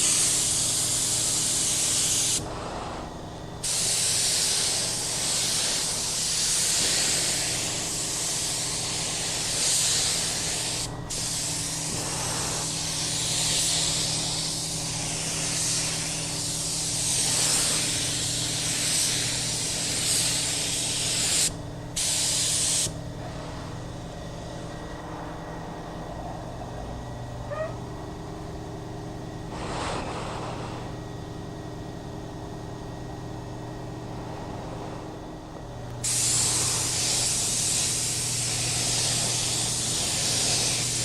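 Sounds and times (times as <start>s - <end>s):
spray gun hissing: 0.0s - 24.0s, 29.5s - 31.0s, 36.0s - 41.0s
steady low hum: 0.0s - 41.0s.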